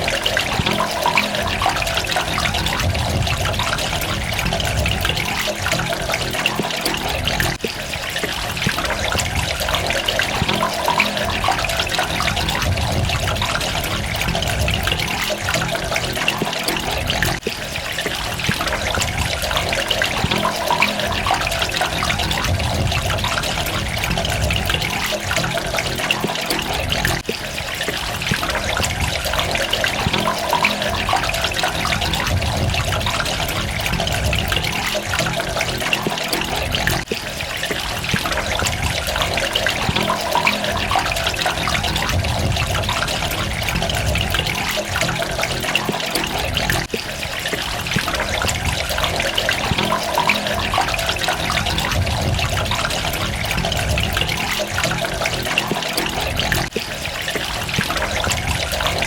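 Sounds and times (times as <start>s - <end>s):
running water trickling and dripping: 0.0s - 59.0s.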